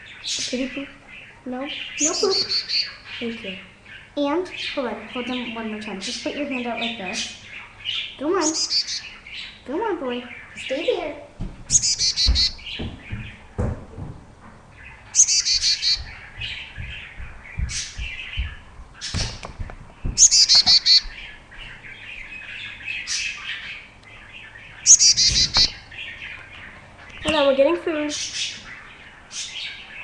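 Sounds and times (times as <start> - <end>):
chickadee chirping: 0.0 - 13.7, 14.7 - 30.0.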